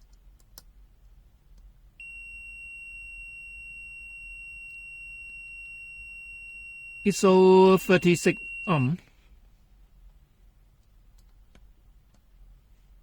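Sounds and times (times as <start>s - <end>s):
multimeter continuous beep: 2.0s - 9.0s.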